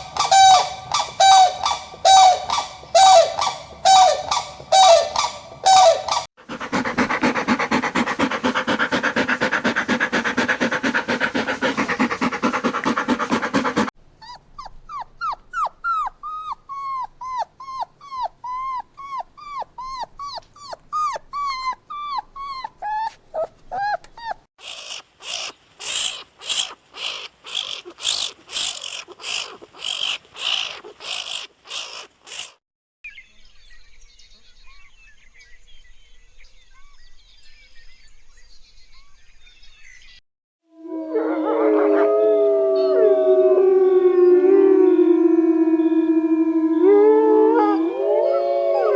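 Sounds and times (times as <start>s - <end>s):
faint outdoor background: 0.0s - 48.9s
dog barking: 3.2s - 13.9s.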